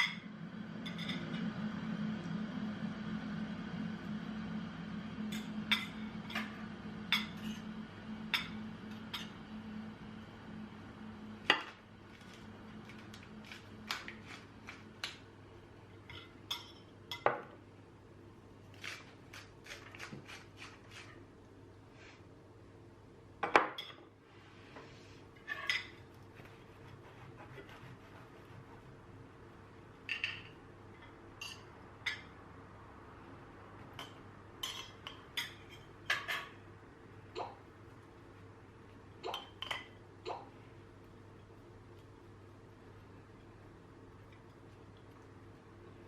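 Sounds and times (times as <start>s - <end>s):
low steady hum: 0.0s - 46.0s
dishes and cutlery clinking: 30.0s - 32.3s.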